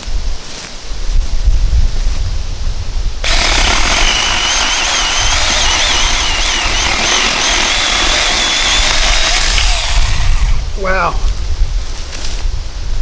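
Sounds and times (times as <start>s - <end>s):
wind rumbling on microphone: 0.0s - 13.0s
electric chainsaw cutting log: 3.2s - 10.8s.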